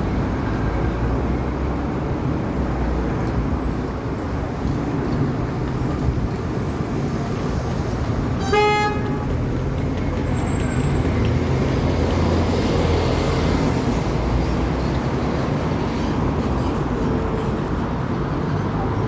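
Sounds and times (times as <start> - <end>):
traffic rumble: 0.0 - 19.0
vehicle horn toot: 8.4 - 9.3.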